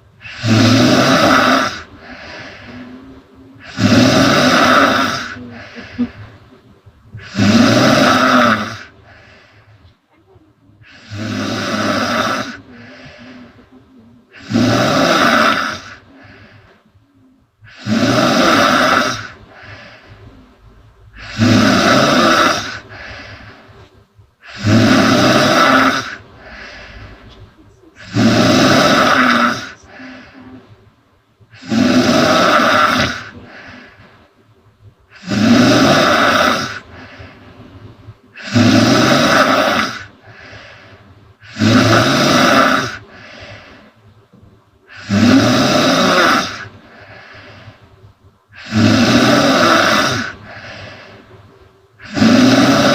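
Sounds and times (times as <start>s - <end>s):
woman snoring loudly: 0.2s - 6.2s, 7.2s - 9.3s, 10.8s - 16.6s, 17.6s - 20.1s, 21.2s - 23.6s, 24.4s - 27.1s, 27.9s - 30.6s, 31.5s - 34.0s, 35.1s - 37.4s, 38.3s - 40.8s, 41.4s - 43.7s, 44.9s - 47.4s, 48.6s - 51.1s, 52.0s - 52.9s
faint breath: 1.8s - 4.0s, 4.9s - 7.6s, 8.8s - 14.6s, 15.7s - 17.9s, 19.2s - 21.6s, 22.5s - 24.7s, 26.1s - 28.3s, 29.2s - 31.7s, 33.1s - 35.4s, 36.8s - 38.7s, 39.9s - 41.8s, 43.0s - 45.3s, 46.6s - 48.8s, 50.2s - 52.1s.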